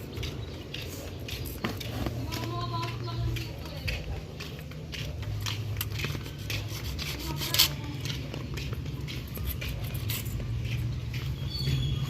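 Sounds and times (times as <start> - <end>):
rubbing and scraping: 5.4 - 11.0.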